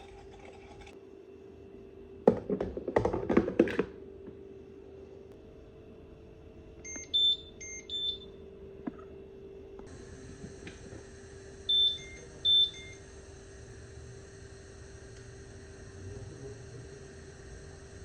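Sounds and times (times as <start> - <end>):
steady low hum: 3.9 - 18.0
electronic appliance beeps: 6.8 - 8.3, 9.9 - 18.0.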